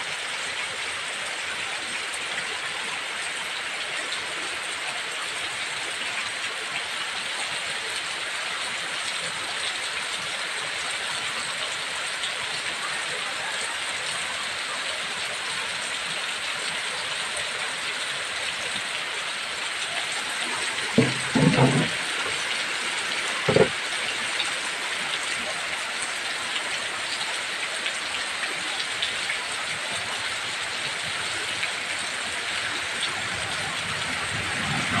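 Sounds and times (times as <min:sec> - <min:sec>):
heavy rain hissing: 0:00.0 - 0:35.0
brief low-pitched thud: 0:21.0 - 0:22.0.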